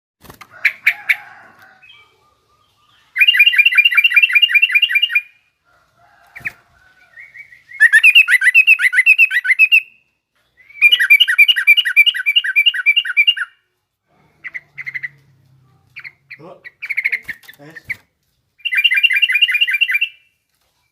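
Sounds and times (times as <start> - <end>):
bulbul singing: 1.8 - 5.5, 6.4 - 13.7, 16.0 - 18.0, 18.6 - 20.4
rapid chattering bird notes: 15.8 - 20.2.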